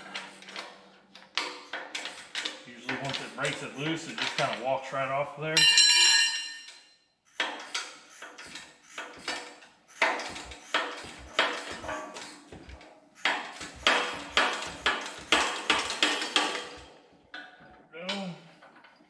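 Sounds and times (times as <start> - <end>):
metal tools clinking: 5.6 - 6.9.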